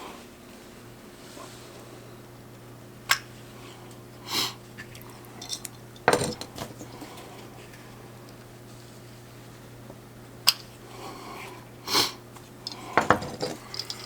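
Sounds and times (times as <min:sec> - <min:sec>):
hard plastic clatter: 0:06.0 - 0:07.1, 0:12.7 - 0:14.0.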